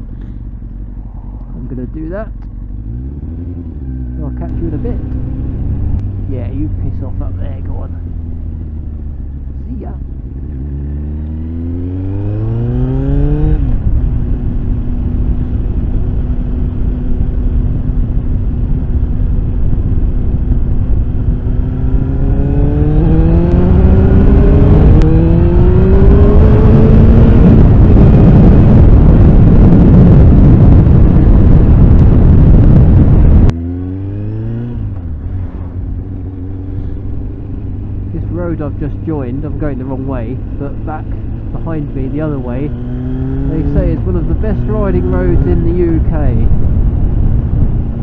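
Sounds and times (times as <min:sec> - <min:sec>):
motorcycle engine accelerating: 0:00.0 - 0:48.0
wind rushing over microphone: 0:00.0 - 0:48.0.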